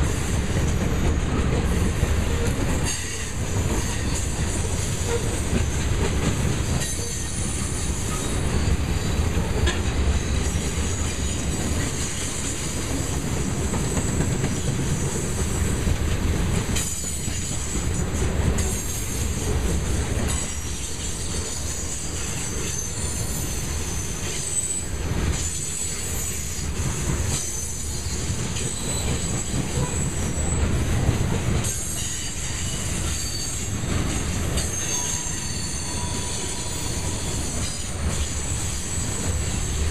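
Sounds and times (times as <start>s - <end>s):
train cars rumbling past: 0.0s - 39.9s
high-pitched wheel squeal: 34.6s - 39.4s.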